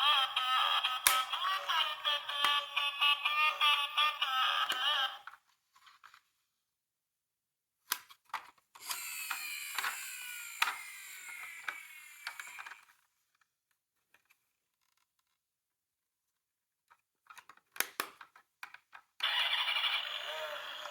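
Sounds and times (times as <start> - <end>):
clicks: 8.8 - 12.8
toy car gear mechanism whirring: 8.8 - 13.0, 19.2 - 20.9.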